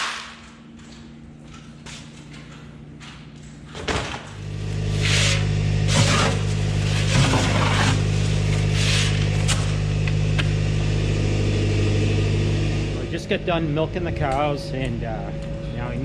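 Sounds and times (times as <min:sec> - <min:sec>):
machine motor humming: 0:04.1 - 0:16.0.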